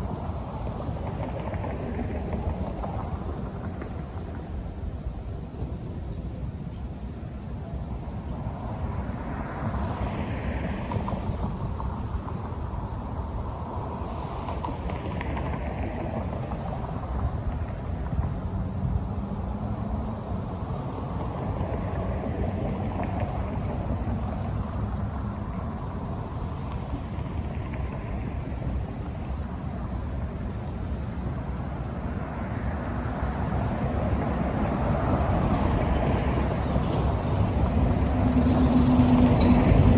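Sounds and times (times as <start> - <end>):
road traffic: 0.0 - 39.9
vehicle approaching: 31.7 - 39.9.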